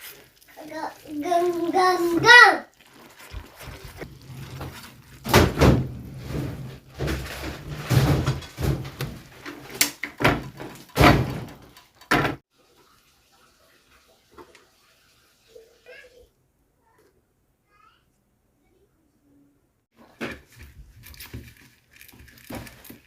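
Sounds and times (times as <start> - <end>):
knocks and thuds: 5.2 - 9.3, 10.2 - 12.4.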